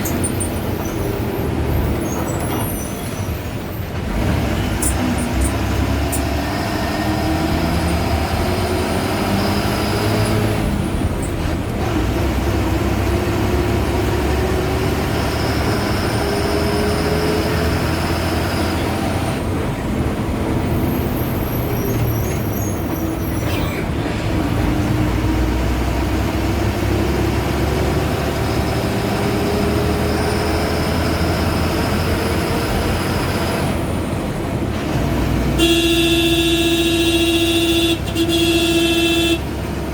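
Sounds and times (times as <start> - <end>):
diesel bus engine accelerating: 0.0 - 39.9.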